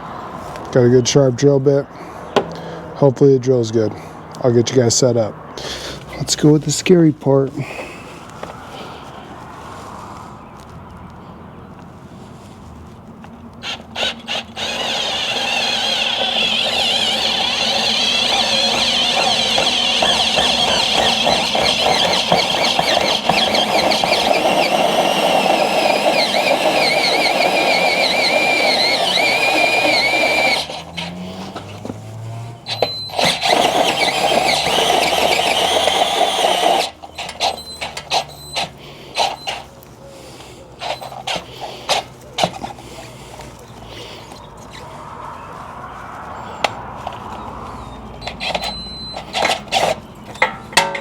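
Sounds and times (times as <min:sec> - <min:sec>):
drill bit squealing in metal: 0:13.6 - 0:31.8, 0:32.6 - 0:39.7, 0:40.8 - 0:42.6, 0:47.3 - 0:50.5.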